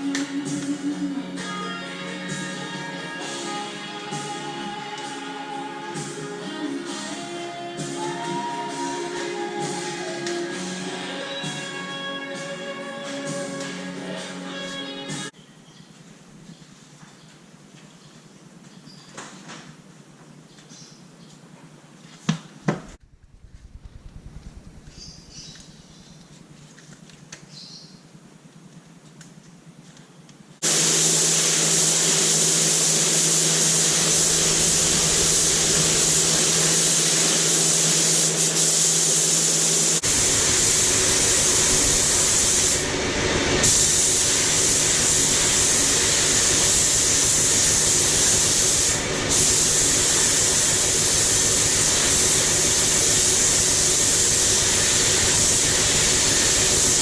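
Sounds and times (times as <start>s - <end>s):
low hum: 23.0s - 26.4s
spray jet hissing: 30.6s - 57.0s.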